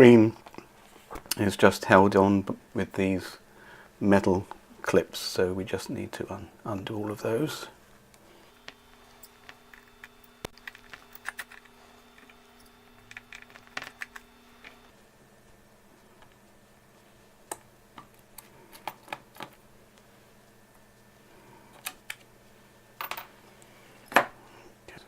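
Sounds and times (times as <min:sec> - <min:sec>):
faint steady hum: 0:00.0 - 0:25.0
tools clicking on metal parts: 0:09.2 - 0:14.8.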